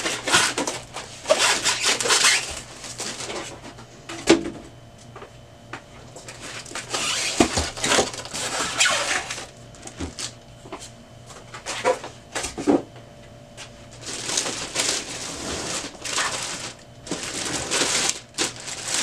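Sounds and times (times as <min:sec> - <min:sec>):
packing material rustling: 0:00.0 - 0:03.5, 0:06.3 - 0:10.4, 0:13.8 - 0:19.0.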